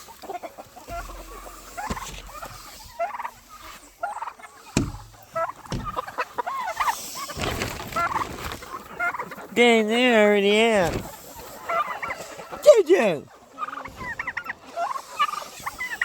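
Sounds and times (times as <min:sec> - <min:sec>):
chickens and turkeys calling: 0:00.0 - 0:16.0
dull thumps: 0:00.9 - 0:06.3.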